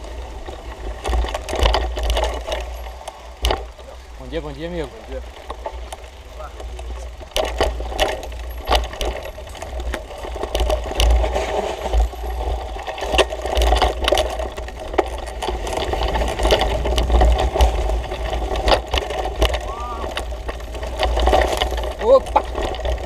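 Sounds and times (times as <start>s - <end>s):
mountain bike rattling on trail: 0.0s - 23.0s
wind buffeting microphone: 11.8s - 23.0s.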